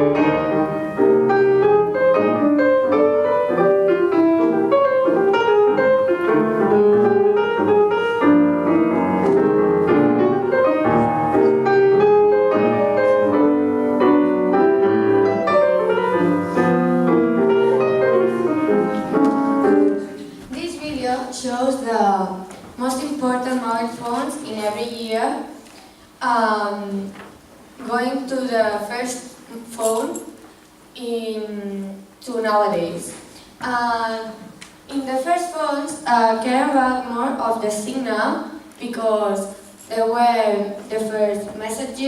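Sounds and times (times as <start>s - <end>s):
piano music: 0.0s - 22.1s.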